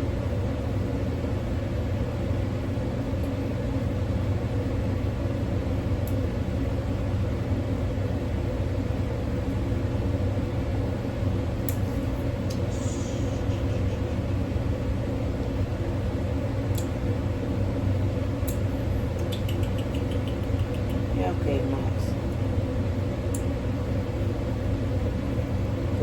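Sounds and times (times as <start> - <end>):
low electric machine hum: 0.0 - 26.0
faint light clicks: 19.2 - 21.1.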